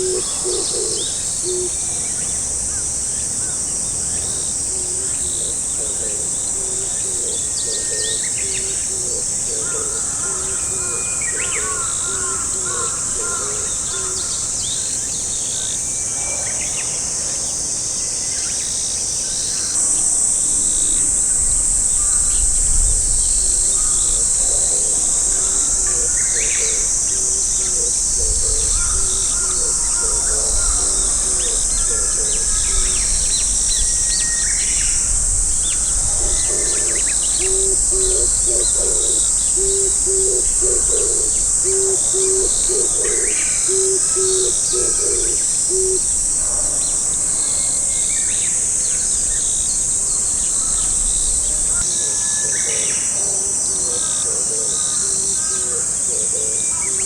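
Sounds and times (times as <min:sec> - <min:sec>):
dove cooing: 0:00.0 - 0:01.8, 0:04.7 - 0:14.5, 0:34.8 - 0:46.8
high insect hiss: 0:00.0 - 0:57.0.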